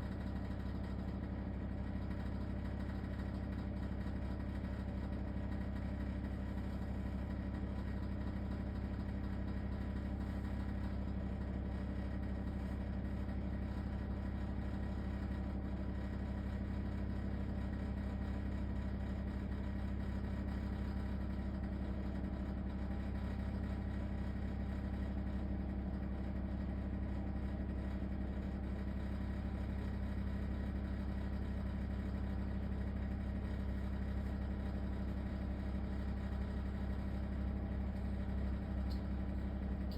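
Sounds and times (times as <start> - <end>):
appliance rattling drone: 37.7 - 39.9.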